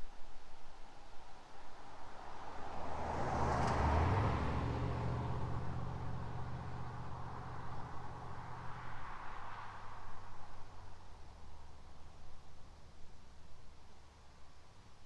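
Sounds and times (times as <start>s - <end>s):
car driving past: 2.2s - 12.3s.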